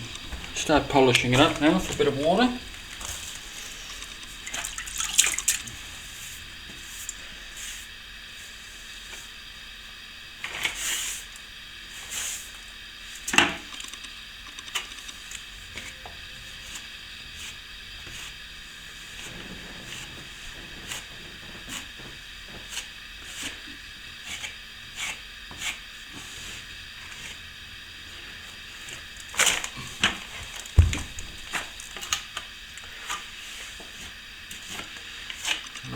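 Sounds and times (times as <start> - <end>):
sharp knock: 30.8 - 31.5.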